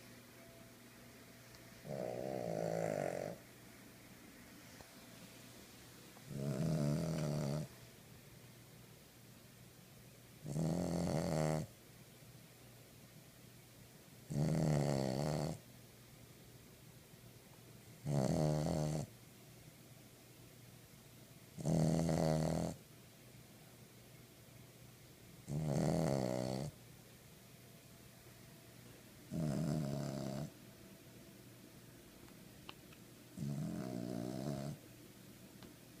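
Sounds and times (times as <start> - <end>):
loud snores: 1.8 - 3.4, 6.3 - 7.7, 10.4 - 11.7, 14.3 - 15.6, 18.0 - 19.1, 21.6 - 22.8, 25.5 - 26.8, 29.3 - 30.5, 33.4 - 34.8.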